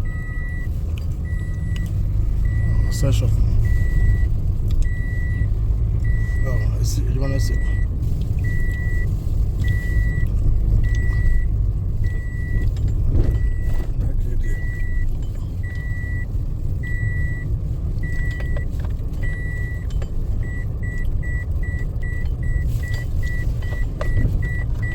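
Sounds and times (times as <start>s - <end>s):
low engine rumble: 0.0s - 24.9s
reversing beeper: 1.3s - 4.3s, 4.9s - 7.9s, 8.5s - 12.7s, 13.3s - 17.4s.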